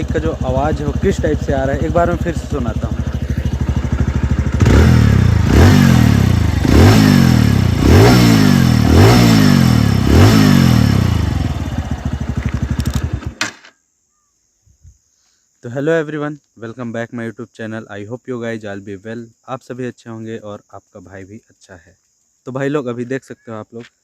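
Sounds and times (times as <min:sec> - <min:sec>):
motorcycle engine idling: 0:00.0 - 0:13.4
motorcycle engine revving: 0:00.0 - 0:13.6.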